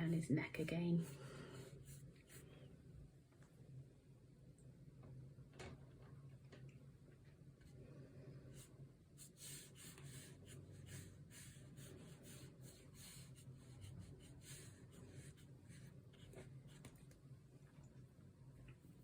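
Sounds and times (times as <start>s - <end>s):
paintbrush strokes on paper: 0.0s - 2.6s, 8.5s - 17.0s
low steady hum: 0.0s - 19.0s.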